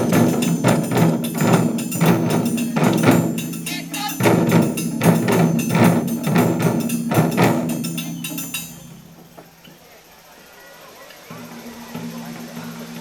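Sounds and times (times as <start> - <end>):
taiko drums playing: 0.0 - 9.3
sharp clacking hits: 0.0 - 9.4.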